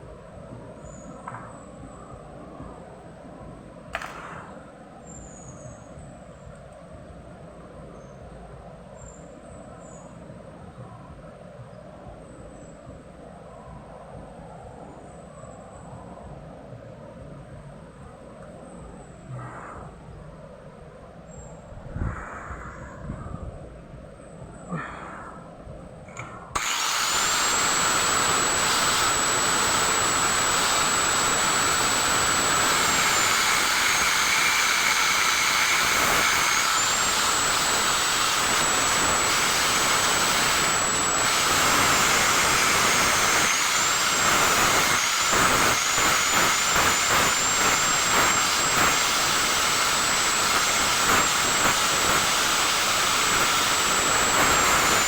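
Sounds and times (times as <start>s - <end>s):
electric power tool whining: 4.0s - 4.6s, 26.1s - 55.0s.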